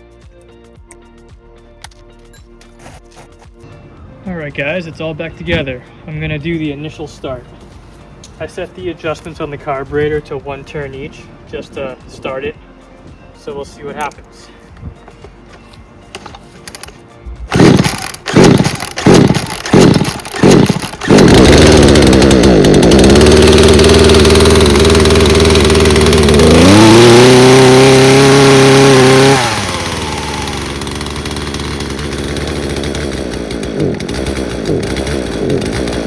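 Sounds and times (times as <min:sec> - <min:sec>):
chainsaw engine running: 0:17.5 - 0:36.0
chainsaw pull-start sputters: 0:17.5 - 0:36.0.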